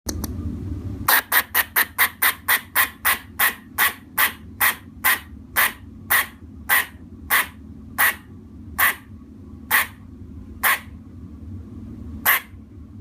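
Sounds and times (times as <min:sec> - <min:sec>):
short sharp animal calls: 0:01.1 - 0:08.2, 0:08.8 - 0:09.0, 0:09.7 - 0:10.0, 0:10.6 - 0:10.9, 0:12.3 - 0:12.6.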